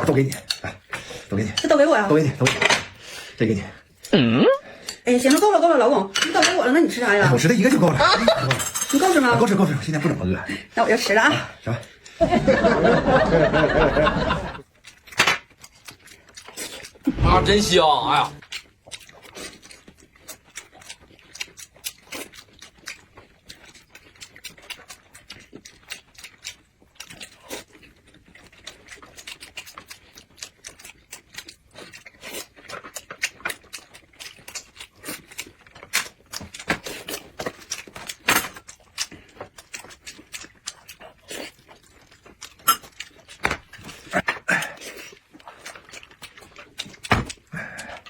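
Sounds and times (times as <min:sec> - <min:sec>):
chewing and lip-smacking: 0:14.6 - 0:17.1, 0:18.2 - 0:48.0.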